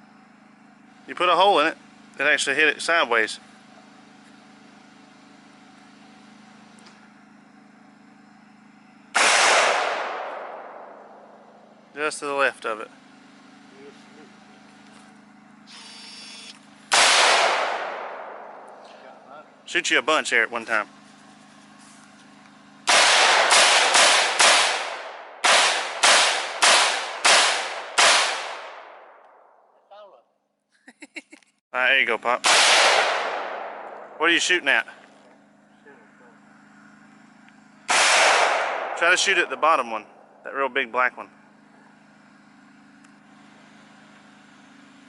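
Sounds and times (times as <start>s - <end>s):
low hum: 0.0s - 29.8s, 32.0s - 45.0s
rifle shot echoing: 9.1s - 11.4s, 16.9s - 18.8s, 22.9s - 29.4s, 32.4s - 34.2s, 37.9s - 40.3s.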